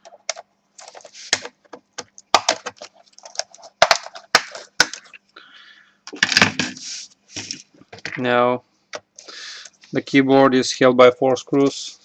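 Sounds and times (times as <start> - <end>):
plastic clips clicking and crackling: 0.0 - 5.2.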